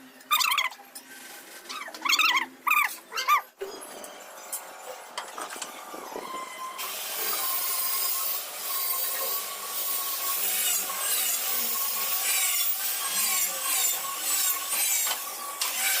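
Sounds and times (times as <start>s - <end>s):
power tool grinding stone: 5.7s - 16.0s.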